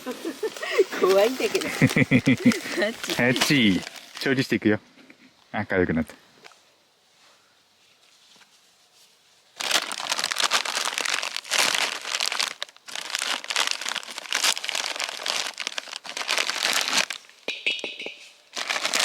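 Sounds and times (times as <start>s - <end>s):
wrapping material crinkling: 0.0s - 4.3s, 9.6s - 17.3s, 18.5s - 19.0s.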